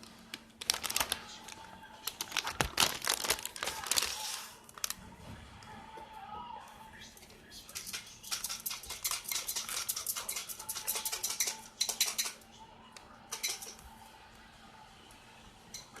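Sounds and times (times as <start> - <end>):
chip bag crinkling and crunching: 0.0 - 5.0.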